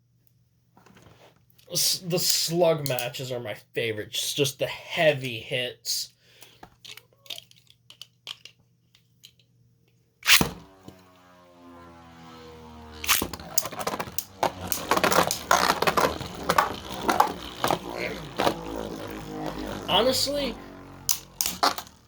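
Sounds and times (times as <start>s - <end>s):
spinning tops whirring: 10.3s - 22.0s
spinning tops launch clack: 21.0s - 22.0s.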